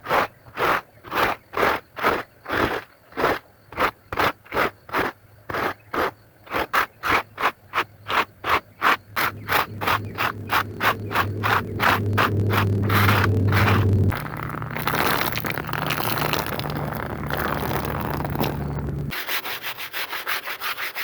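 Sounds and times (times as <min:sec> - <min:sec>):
low motor hum: 0:09.1 - 0:19.2
wet carpet scrubbed by hand: 0:09.2 - 0:21.0.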